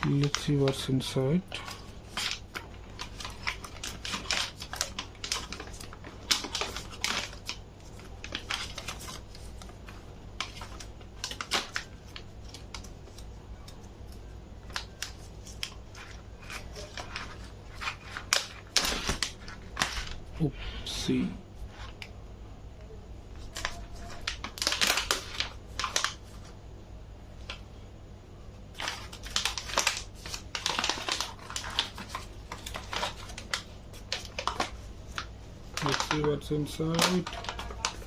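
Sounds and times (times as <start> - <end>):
plastic snack pouch crinkling: 1.5 - 13.8, 23.4 - 26.5, 28.7 - 38.0.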